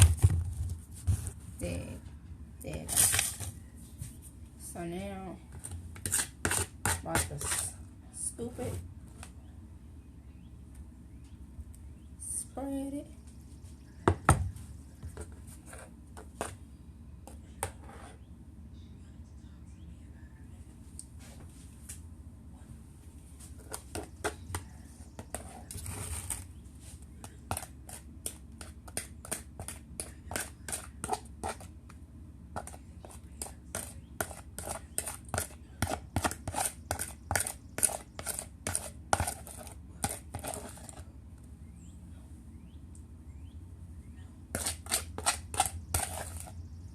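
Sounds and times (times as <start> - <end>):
metal spoon scraping a dish: 5.6 - 7.8, 27.4 - 31.7, 32.6 - 41.0, 44.5 - 46.6.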